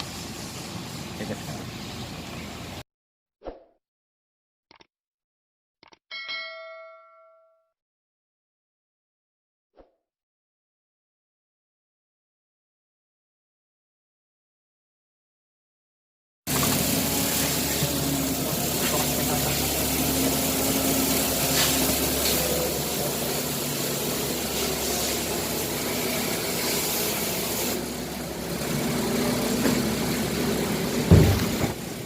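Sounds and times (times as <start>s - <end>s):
industrial machinery humming: 16.5s - 32.0s.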